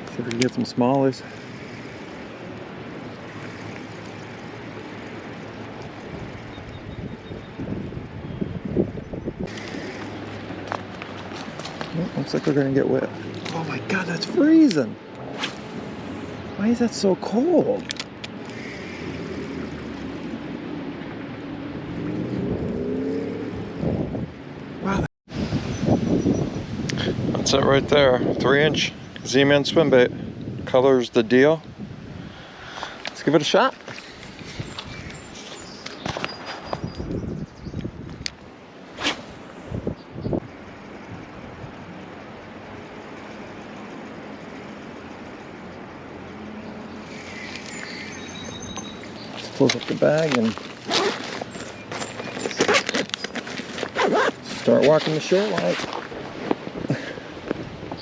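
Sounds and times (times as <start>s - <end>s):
river water rushing around legs: 1.1s - 6.5s
outdoor rushing noise: 9.4s - 24.6s, 38.8s - 42.0s.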